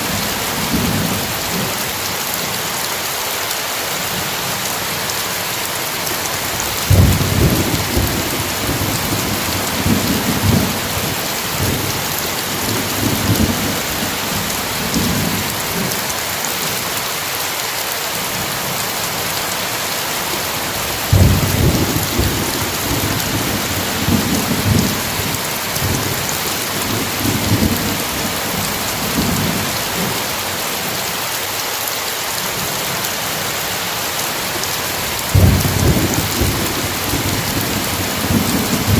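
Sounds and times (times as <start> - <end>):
heavy rain: 0.0 - 38.9
thunder rumbling: 6.9 - 15.6, 20.8 - 30.1, 35.3 - 38.9.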